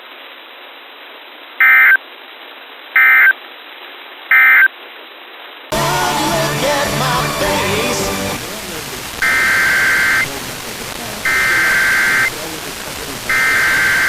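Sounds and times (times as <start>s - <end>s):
hissy broadcast background: 0.0s - 14.0s
digital data tone bursts: 1.6s - 2.0s, 9.2s - 10.3s, 11.2s - 12.4s, 13.3s - 14.0s
music: 5.7s - 8.4s.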